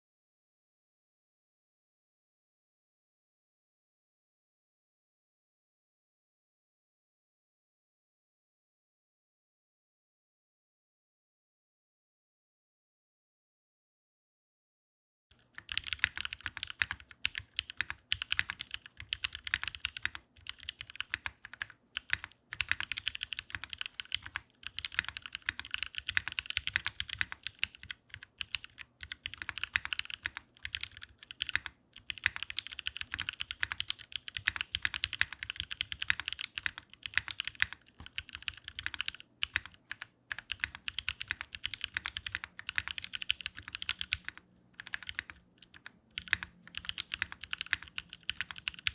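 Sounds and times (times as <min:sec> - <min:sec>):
typing on mechanical keyboard: 0:15.4 - 0:48.9.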